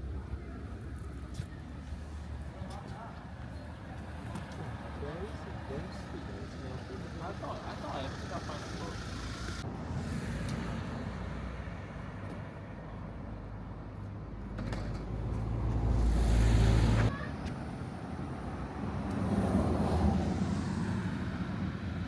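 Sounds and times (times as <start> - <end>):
road vehicle rumble: 0.0 - 22.0.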